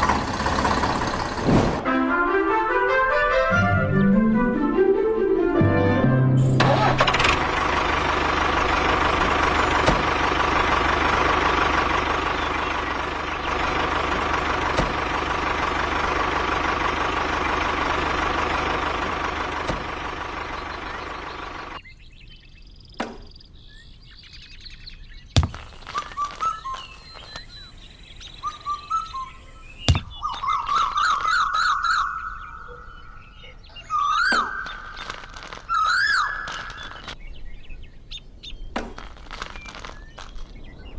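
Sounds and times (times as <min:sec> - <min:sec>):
loud steady noise: 0:00.0 - 0:01.9
birds chirping: 0:06.7 - 0:40.9
sharp knocks: 0:23.0 - 0:23.4, 0:25.4 - 0:26.1, 0:29.9 - 0:30.2, 0:38.8 - 0:39.1.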